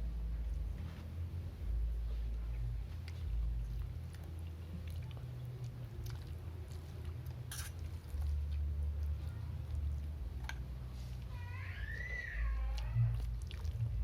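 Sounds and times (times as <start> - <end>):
low rumble: 0.0 - 14.0
person chewing: 2.9 - 11.3, 12.6 - 14.0.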